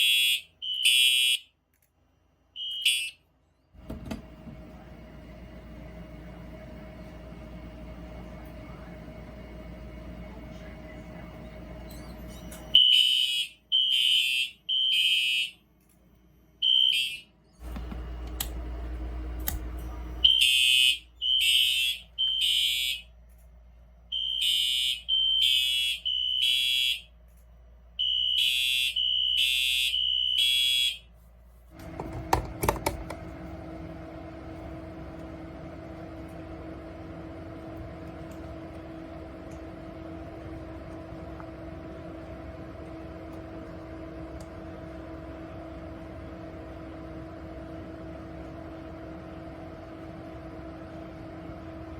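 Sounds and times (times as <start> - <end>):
fire alarm horn blasts: 0.0 - 1.6, 2.5 - 3.3, 12.7 - 15.6, 16.6 - 17.4, 19.8 - 23.1, 24.1 - 27.2, 28.0 - 31.2
steady hum: 3.8 - 12.8, 16.2 - 51.9
clicks: 17.6 - 18.6, 19.3 - 20.0.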